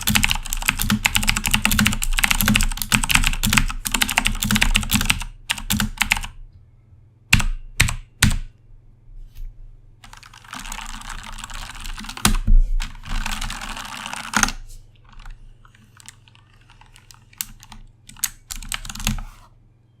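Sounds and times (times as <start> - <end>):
clicky mechanical keyboard typing: 0.0 - 6.4, 10.0 - 19.3.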